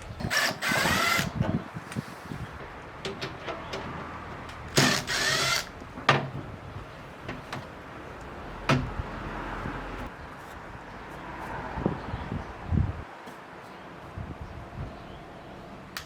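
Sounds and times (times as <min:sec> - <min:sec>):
power drill whining: 0:00.2 - 0:01.3, 0:04.8 - 0:05.7.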